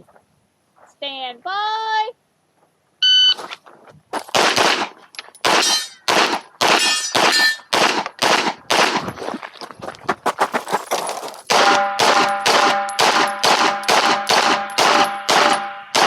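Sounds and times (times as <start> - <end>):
shot timer beep: 3.0 - 3.4
pistol shots: 4.3 - 9.1, 11.5 - 16.0
bullets clanging on steel targets: 5.2 - 8.0, 11.5 - 16.0.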